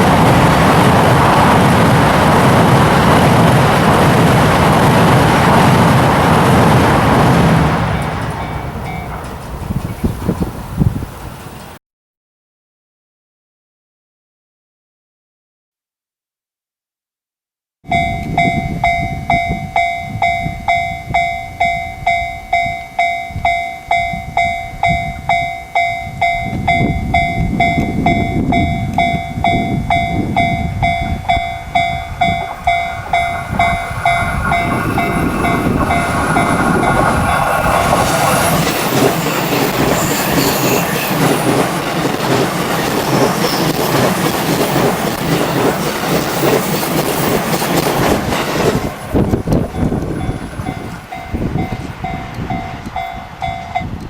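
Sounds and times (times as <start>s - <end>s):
train wheels rushing on rails: 0.0s - 11.6s, 18.4s - 54.0s
level crossing warning bell: 8.0s - 10.0s, 17.9s - 47.8s, 48.7s - 54.0s.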